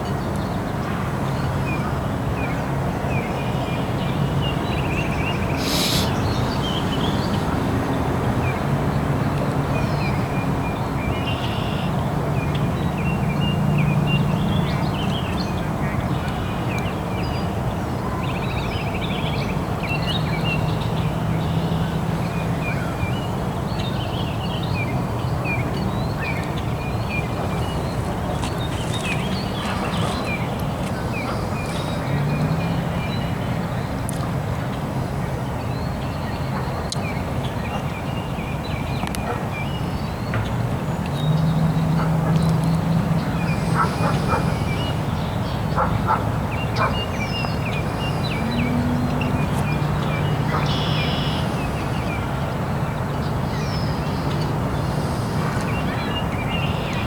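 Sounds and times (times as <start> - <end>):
small birds chirping: 5.1 - 7.5, 25.8 - 33.3, 41.0 - 52.4
ducks quacking: 43.4 - 45.0.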